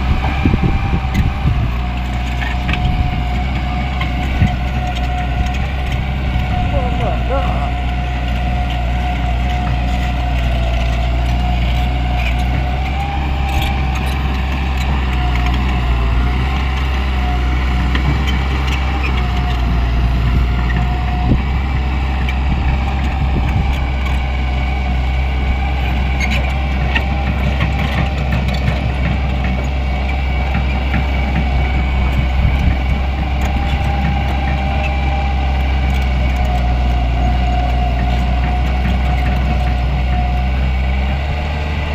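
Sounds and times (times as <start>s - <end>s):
heavy machine engine rumbling: 0.0s - 41.9s
high whine: 2.4s - 8.7s.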